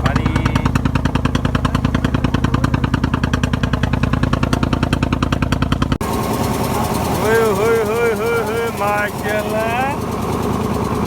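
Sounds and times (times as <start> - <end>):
boat engine thumping: 0.0 - 11.0.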